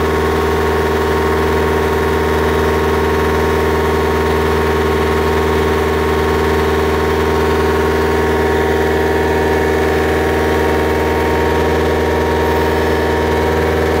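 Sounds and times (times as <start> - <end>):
drilling rig engine droning: 0.0 - 14.0.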